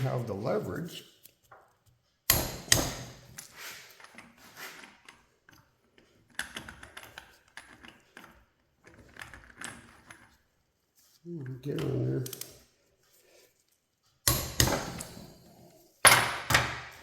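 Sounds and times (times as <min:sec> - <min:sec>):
wrench taps and clinks: 0:14.3 - 0:15.4.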